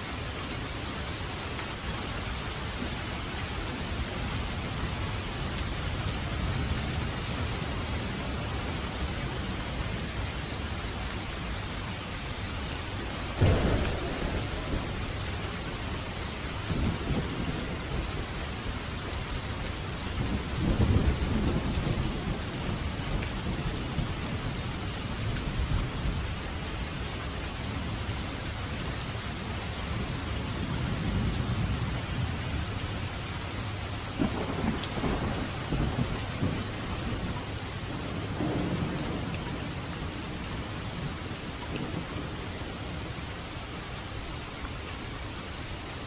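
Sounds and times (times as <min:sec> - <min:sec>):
steady rain falling: 0:00.0 - 0:46.0
thunder rumbling: 0:13.2 - 0:26.4, 0:34.0 - 0:43.6.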